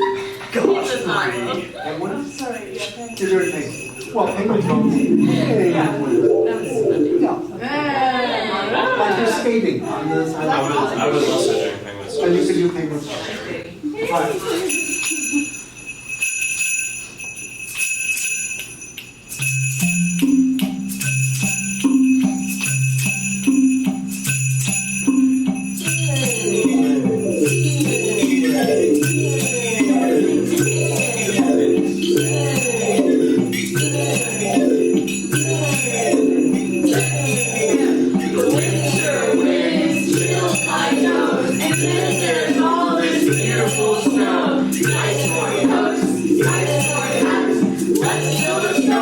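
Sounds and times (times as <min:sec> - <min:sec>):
shakers rattling: 0:00.0 - 0:07.0, 0:11.3 - 0:11.7, 0:14.4 - 0:49.0
sleigh bells shaking: 0:00.0 - 0:07.5, 0:10.3 - 0:12.5, 0:14.4 - 0:49.0
low mallet instrument notes: 0:04.6 - 0:07.7, 0:11.1 - 0:12.9, 0:19.4 - 0:49.0.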